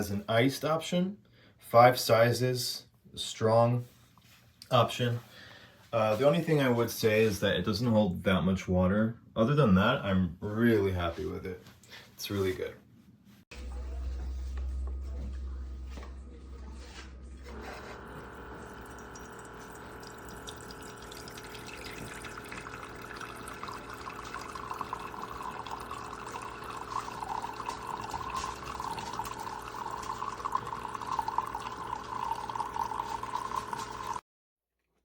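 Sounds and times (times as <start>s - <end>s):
coffee maker pump humming: 13.5s - 34.2s
coffee streaming into cup: 15.9s - 34.2s.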